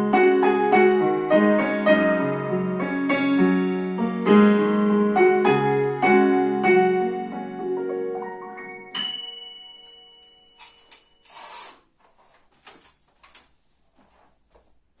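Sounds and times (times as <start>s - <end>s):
piano note ringing: 0.0s - 11.3s.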